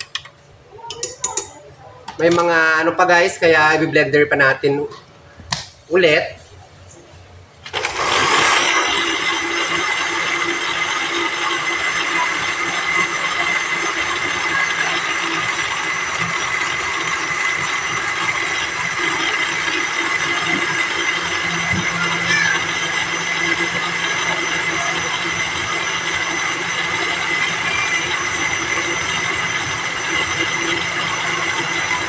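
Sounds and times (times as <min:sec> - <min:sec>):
blender whining: 0:07.7 - 0:32.0.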